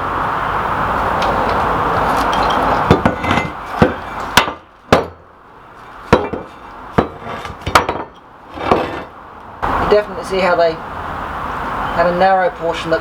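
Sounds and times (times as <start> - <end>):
heavy iron parts clanking: 1.2 - 9.2.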